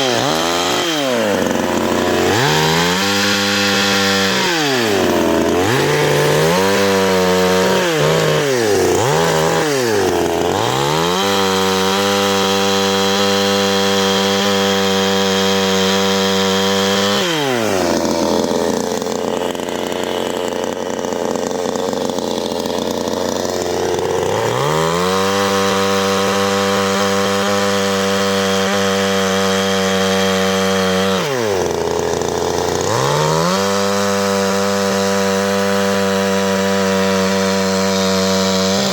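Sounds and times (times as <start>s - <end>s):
chainsaw revving: 0.0s - 38.9s.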